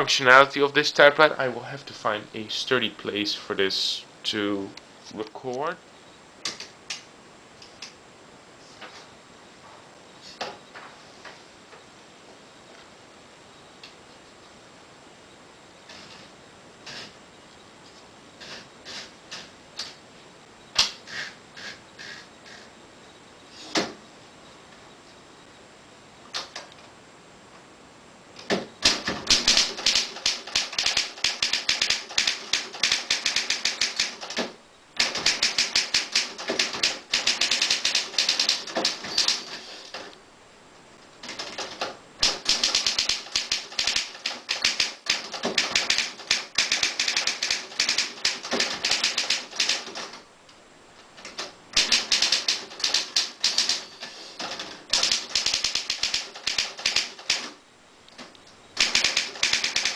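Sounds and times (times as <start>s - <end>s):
manual typewriter key strikes: 28.8s - 39.4s, 41.2s - 50.1s, 51.8s - 53.8s, 54.5s - 57.5s, 58.8s - 59.9s.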